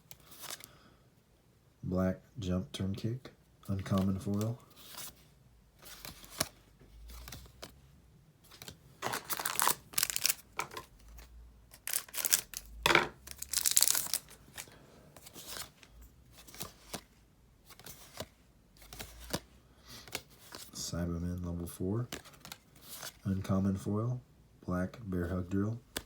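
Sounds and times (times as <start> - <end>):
wrapper tearing and crinkling: 9.0 - 10.9, 11.7 - 14.7.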